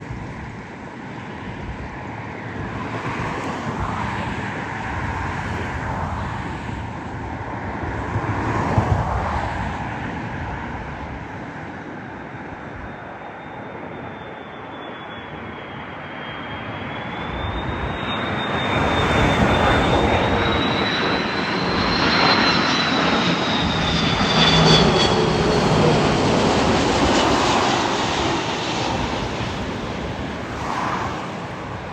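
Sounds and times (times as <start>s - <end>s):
jet engines roaring: 0.0s - 31.9s
high engine whine: 10.4s - 31.9s.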